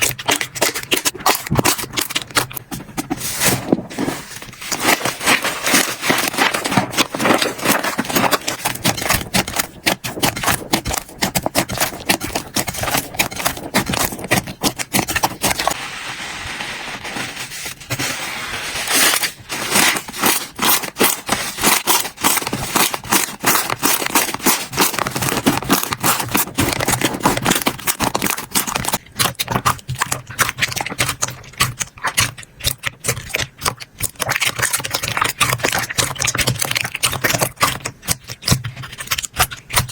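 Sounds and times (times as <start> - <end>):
slime squishing: 0.0 - 39.9
slime crackling and popping: 18.8 - 39.9.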